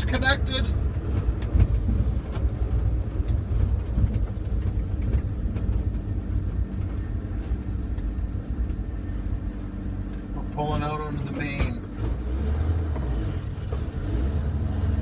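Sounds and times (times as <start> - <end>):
engine and road rumble: 0.0 - 15.0
steady engine hum: 0.0 - 15.0.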